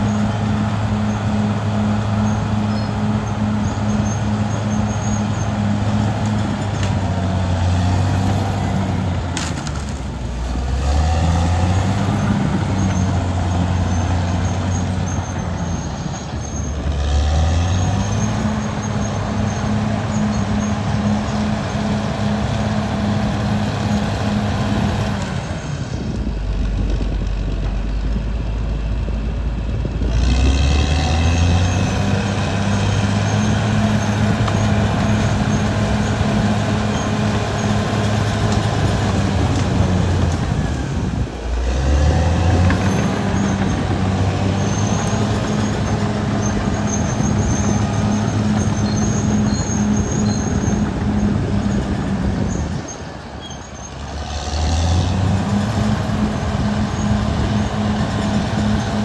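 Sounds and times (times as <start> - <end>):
bulldozer diesel engine under load: 0.0 - 59.0.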